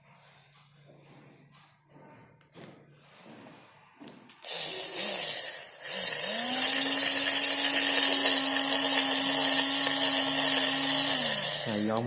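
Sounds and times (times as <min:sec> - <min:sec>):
small drill motor whine: 0:04.4 - 0:12.0.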